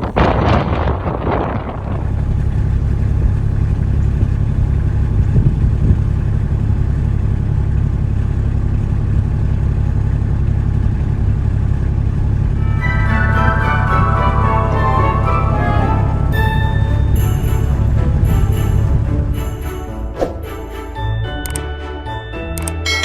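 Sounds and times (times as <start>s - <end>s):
wind buffeting microphone: 0.0s - 6.3s.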